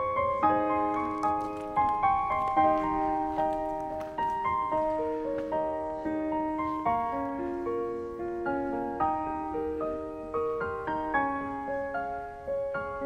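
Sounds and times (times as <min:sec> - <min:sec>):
slow piano melody: 0:00.0 - 0:13.0.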